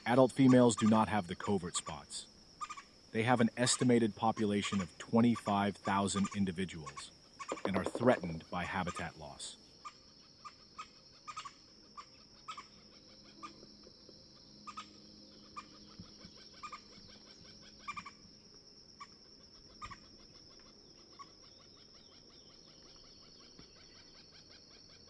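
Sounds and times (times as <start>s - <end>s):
woodpecker call notes: 0.0s - 25.0s
high-pitched insect buzz: 9.7s - 25.0s.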